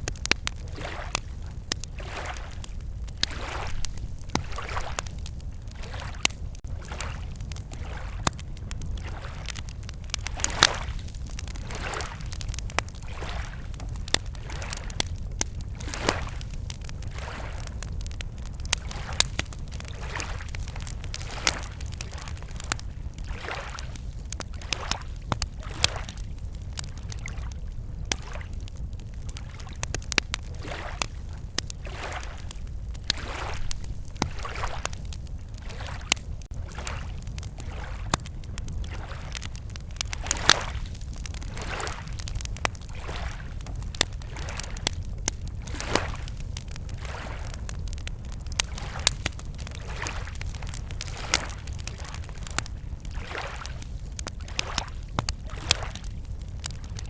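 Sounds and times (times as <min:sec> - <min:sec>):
campfire crackling and popping: 0:00.0 - 0:57.0
small waves lapping at shore: 0:00.6 - 0:08.4, 0:09.0 - 0:15.1, 0:15.8 - 0:17.7, 0:18.8 - 0:26.2, 0:30.5 - 0:32.5, 0:33.1 - 0:38.2, 0:38.9 - 0:43.6, 0:45.6 - 0:47.6, 0:48.8 - 0:56.0.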